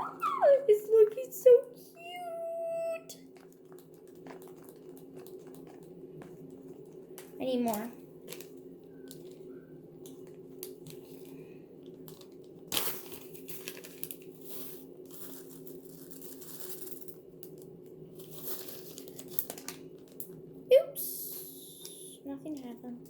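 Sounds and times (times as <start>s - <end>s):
steady low hum: 0.0s - 23.0s
rustling and crinkling: 3.1s - 20.4s.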